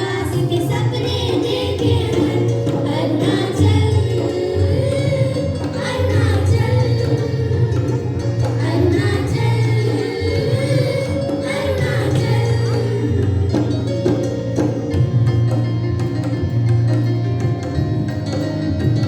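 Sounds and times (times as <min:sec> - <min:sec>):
voices singing: 0:00.0 - 0:14.8
held bass line: 0:00.3 - 0:19.0.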